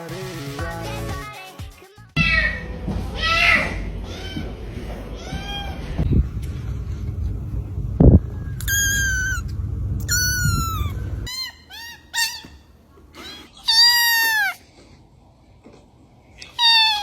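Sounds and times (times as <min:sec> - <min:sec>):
low rumble: 0:02.2 - 0:11.3
cat meowing: 0:08.6 - 0:11.0, 0:13.2 - 0:14.6.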